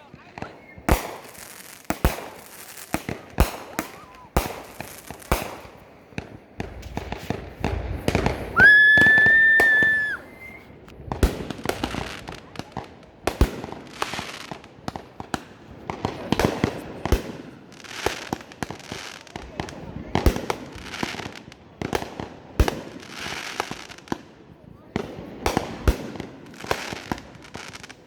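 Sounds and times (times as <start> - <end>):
fireworks bangs and crackling: 0.0 - 28.0
high-pitched firework whistle: 8.6 - 10.8.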